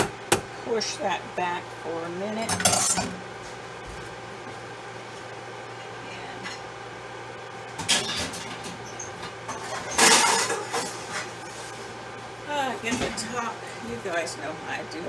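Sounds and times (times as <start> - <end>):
steady low hum: 0.0 - 15.0
cookware clanking and scraping: 2.4 - 3.2, 7.8 - 11.6.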